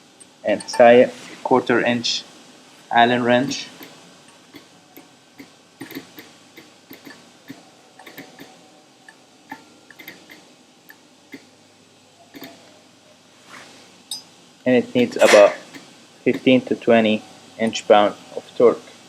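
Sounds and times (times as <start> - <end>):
allen wrench clicking on bolt: 12.3 - 12.6.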